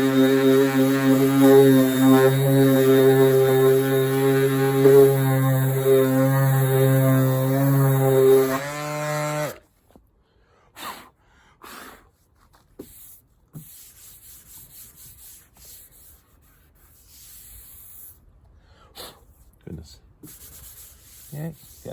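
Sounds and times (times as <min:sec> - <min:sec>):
power sander running: 0:00.0 - 0:09.6
rubbing and brushing on panel: 0:12.2 - 0:18.2, 0:20.2 - 0:21.9.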